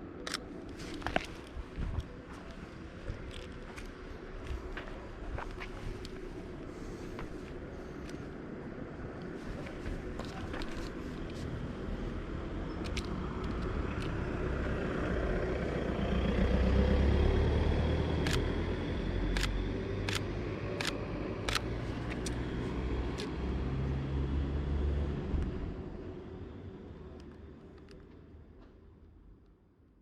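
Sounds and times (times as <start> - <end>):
vehicle passing by: 10.7 - 25.9.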